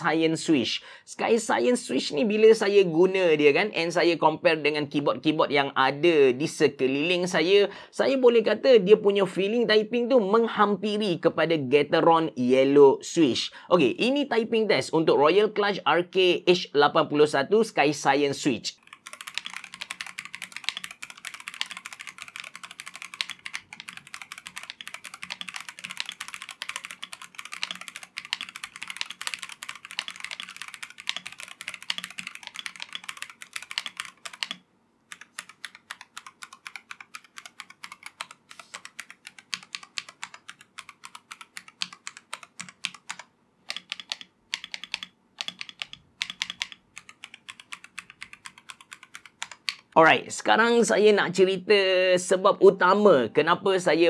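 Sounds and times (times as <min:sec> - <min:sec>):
mechanical keyboard typing: 0:18.7 - 0:50.0.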